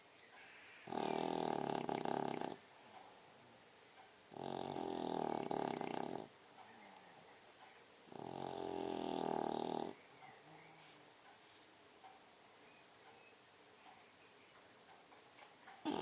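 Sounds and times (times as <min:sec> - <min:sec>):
dog snoring: 0:00.8 - 0:07.3, 0:08.0 - 0:11.7.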